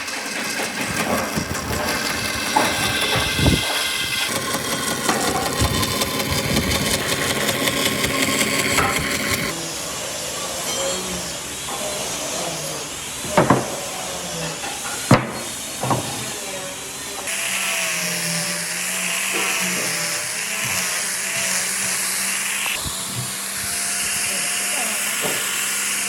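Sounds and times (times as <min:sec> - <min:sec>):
power tool running: 0:00.0 - 0:10.3, 0:16.4 - 0:26.0.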